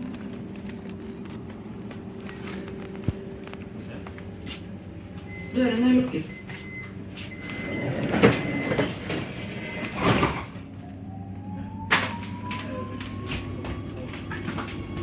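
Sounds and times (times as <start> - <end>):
train carriage rumble: 0.0 - 10.8
electric motors whining: 6.8 - 15.0
train doors sliding shut: 7.6 - 10.6.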